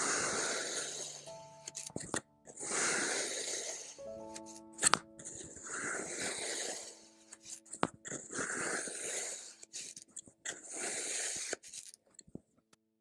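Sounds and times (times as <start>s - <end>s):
tool scraping through sand: 0.0s - 12.0s.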